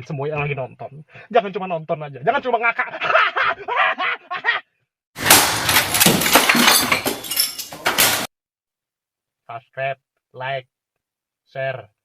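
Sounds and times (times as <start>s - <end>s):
clattering with sharp knocks: 5.2s - 8.3s.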